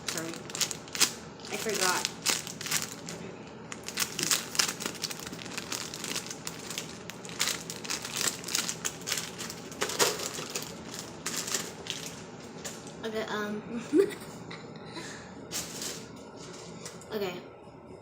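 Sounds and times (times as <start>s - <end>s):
plastic packaging crinkling: 0.0s - 13.0s, 15.5s - 16.1s.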